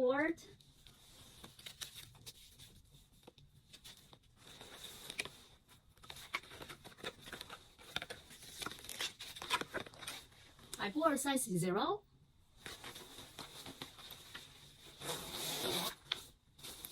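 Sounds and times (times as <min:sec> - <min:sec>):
jacket and wrapping rustling: 0:12.5 - 0:16.9.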